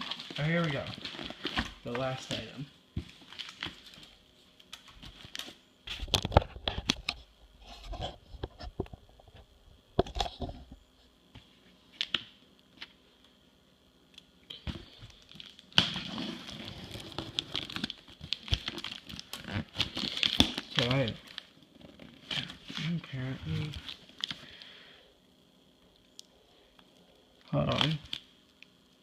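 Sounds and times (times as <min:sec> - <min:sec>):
cardboard crinkling and rustling: 0:00.0 - 0:07.2, 0:14.6 - 0:24.4
cardboard tearing: 0:15.4 - 0:24.4.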